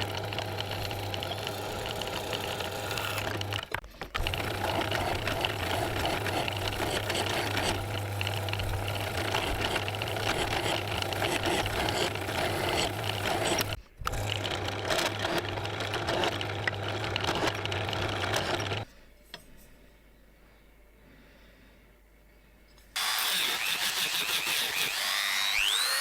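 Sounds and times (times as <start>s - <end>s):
machine humming with mechanical chatter: 0.0s - 18.9s.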